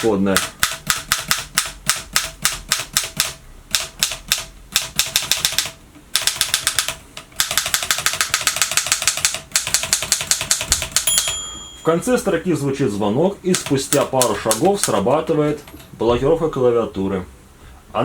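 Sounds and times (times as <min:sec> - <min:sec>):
typewriter keystrokes: 0:00.0 - 0:11.4, 0:13.5 - 0:15.1.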